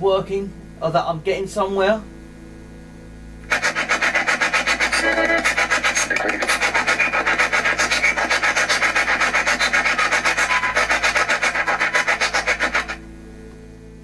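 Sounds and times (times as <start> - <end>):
rapid chopping radio static: 3.5 - 13.0.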